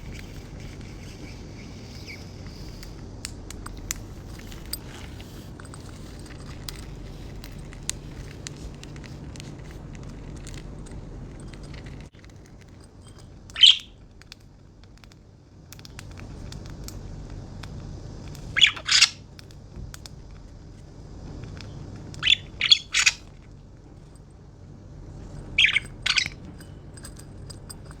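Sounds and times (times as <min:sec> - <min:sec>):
bird chirp: 0:00.0 - 0:02.9, 0:13.5 - 0:14.0, 0:18.5 - 0:19.2, 0:22.2 - 0:23.3, 0:25.4 - 0:26.5
low steady hum: 0:00.0 - 0:28.0
birds cracking seed: 0:21.2 - 0:23.6.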